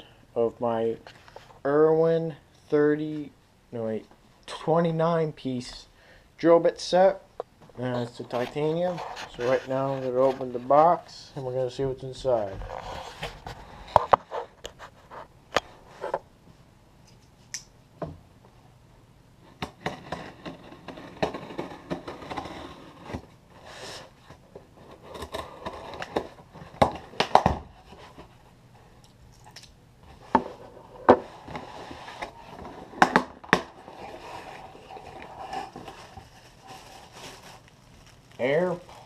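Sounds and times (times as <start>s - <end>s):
cardboard scraping and rustling: 8.2s - 11.0s, 19.7s - 28.4s, 30.1s - 39.0s.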